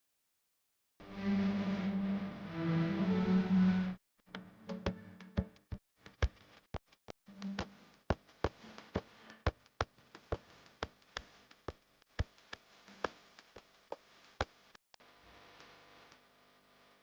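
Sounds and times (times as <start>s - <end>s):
faint steady hum: 7.4s - 17.0s.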